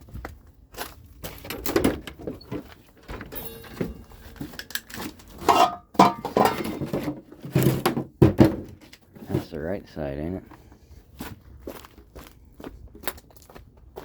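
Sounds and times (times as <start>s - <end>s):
plastic knocks clicks and rattles: 1.2s - 9.0s.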